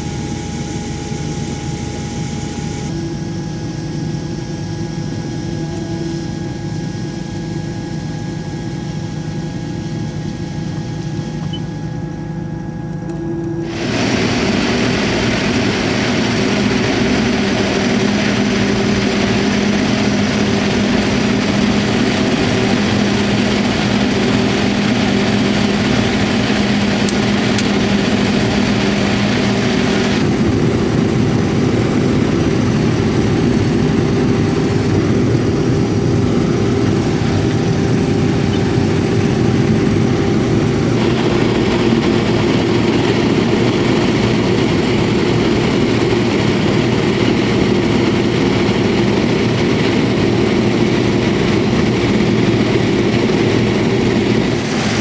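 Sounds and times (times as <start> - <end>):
engine hum: 10.5 - 55.0
corn sheller running: 13.6 - 42.8.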